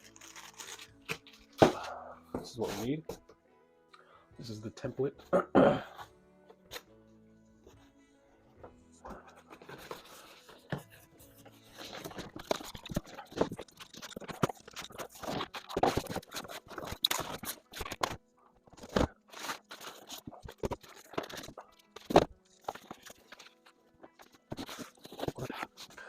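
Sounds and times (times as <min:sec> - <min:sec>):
paper and plastic rustling: 0:09.1 - 0:26.0.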